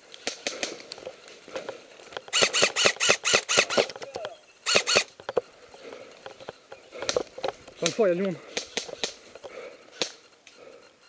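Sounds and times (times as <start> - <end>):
faint clicks: 5.0 - 10.6.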